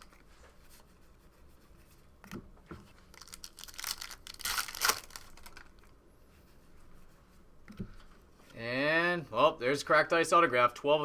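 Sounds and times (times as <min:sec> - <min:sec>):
foil wrapper crinkling and tearing: 0:03.1 - 0:05.9.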